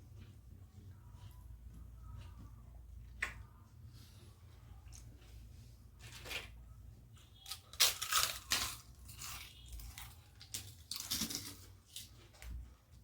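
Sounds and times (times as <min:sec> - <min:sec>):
crisp crunching and chewing: 0:07.4 - 0:12.8.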